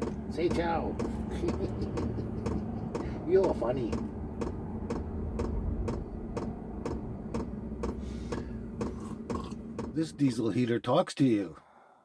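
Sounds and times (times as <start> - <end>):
fuel pump ticking: 0.0 - 10.1.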